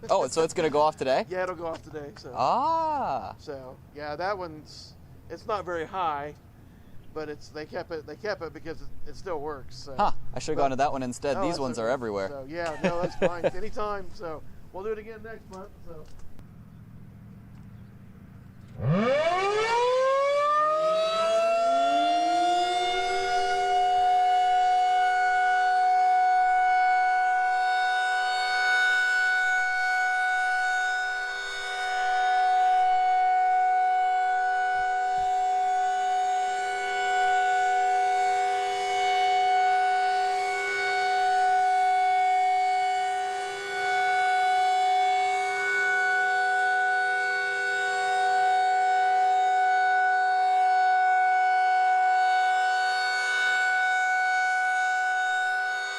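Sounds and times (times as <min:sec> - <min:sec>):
outdoor warning siren: 0:11.2 - 0:14.9, 0:18.5 - 0:55.9.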